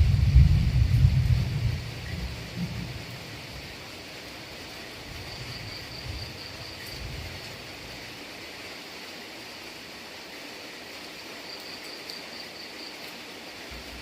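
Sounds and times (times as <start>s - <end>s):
low rumble: 0.0s - 2.9s
steady rain hissing: 0.0s - 14.0s.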